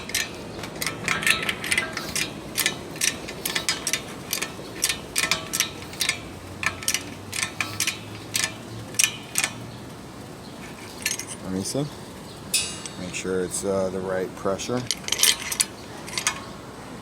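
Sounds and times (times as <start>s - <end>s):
tool metallic clicks: 0.0s - 9.7s, 10.6s - 11.4s, 12.5s - 13.0s, 14.8s - 16.6s.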